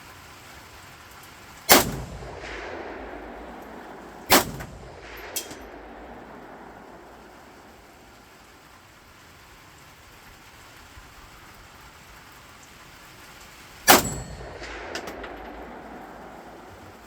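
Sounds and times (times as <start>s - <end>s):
faint background hiss: 0.0s - 17.0s
rifle shot: 1.7s - 8.4s, 13.9s - 17.0s.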